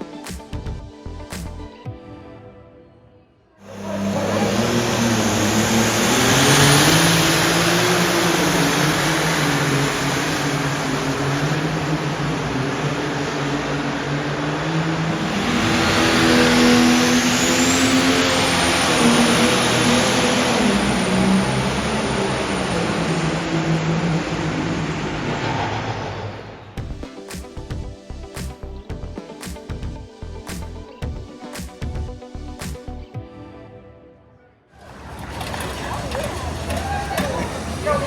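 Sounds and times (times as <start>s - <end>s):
high whine: 3.6s - 28.6s
engine running hard: 3.7s - 26.9s, 34.8s - 38.0s.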